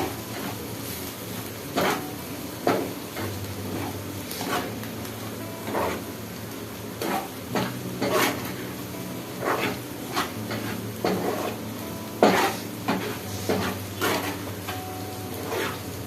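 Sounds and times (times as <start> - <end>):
light frying sizzle: 0.0 - 16.0
spoon clinking and scraping pan: 1.7 - 2.9, 7.0 - 8.6, 9.4 - 11.6, 12.2 - 14.8.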